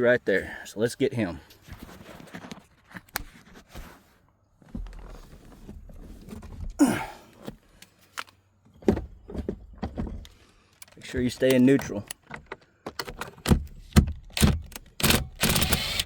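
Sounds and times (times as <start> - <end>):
hand tool clicking on bolt: 10.8 - 16.0.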